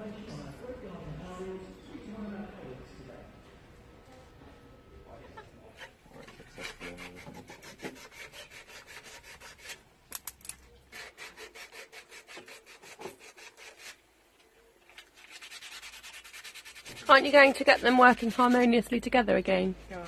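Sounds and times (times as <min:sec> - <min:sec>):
rapid rhythmic scraping: 0:15.2 - 0:19.2.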